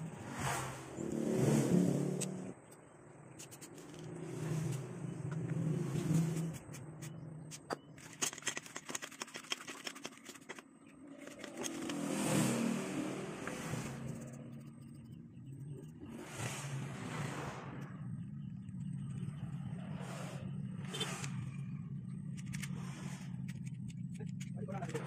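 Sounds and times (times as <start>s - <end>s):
vehicles passing by: 0.0s - 8.1s, 10.6s - 25.0s
clicks and scrapes of seat belt parts: 3.4s - 12.1s, 22.3s - 25.0s.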